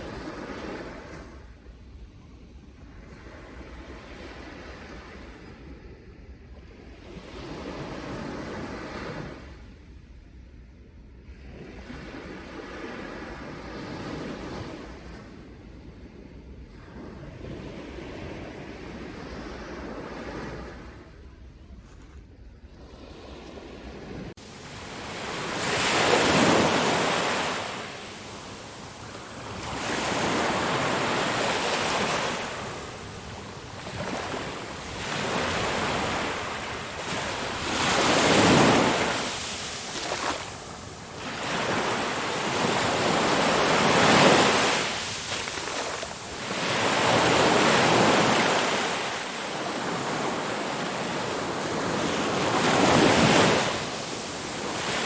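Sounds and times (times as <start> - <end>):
waves breaking: 22.8 - 55.0.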